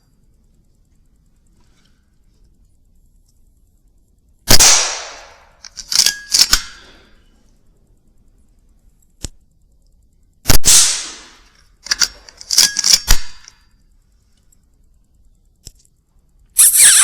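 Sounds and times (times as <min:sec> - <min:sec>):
air rifle shot: 0:04.5 - 0:05.4, 0:10.5 - 0:11.4.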